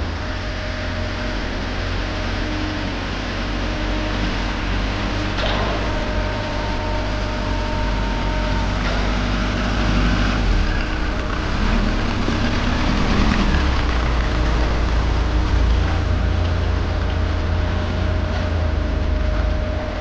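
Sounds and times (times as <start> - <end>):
faint whining tones: 0.0 - 12.8
engine rumbling: 0.0 - 20.0.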